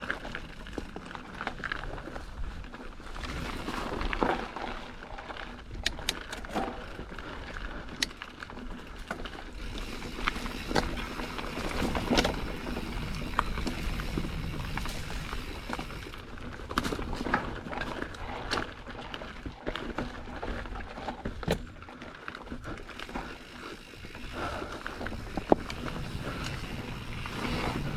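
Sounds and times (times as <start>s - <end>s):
bike rattling over bumps: 0.0s - 27.9s
bike tyres rolling over dirt: 0.0s - 27.9s.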